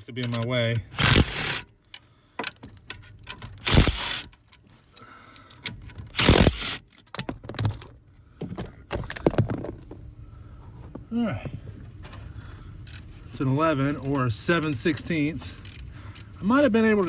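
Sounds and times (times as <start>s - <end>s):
metal on metal clicks: 0.1s - 4.7s.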